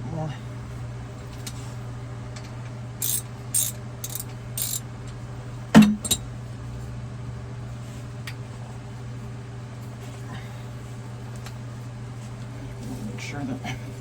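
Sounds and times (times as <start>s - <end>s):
sharp metallic clank: 3.0s - 4.8s
tools scraping clicks on pipe: 3.0s - 4.8s.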